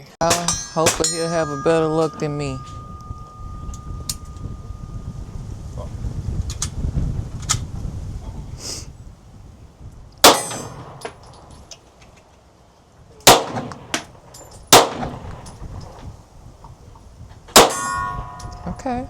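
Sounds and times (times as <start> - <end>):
wind rumbling on microphone: 0.3 - 11.7, 12.9 - 19.0
gunshots: 10.2 - 11.0, 13.3 - 14.1, 14.7 - 15.4, 17.6 - 17.9.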